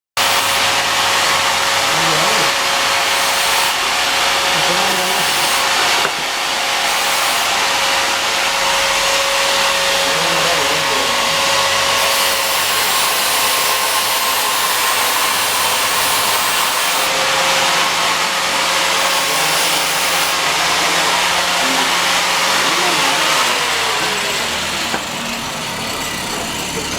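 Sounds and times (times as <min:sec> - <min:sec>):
arc welding hiss: 0:00.2 - 0:01.0, 0:01.6 - 0:07.6, 0:12.0 - 0:17.1, 0:19.0 - 0:20.9.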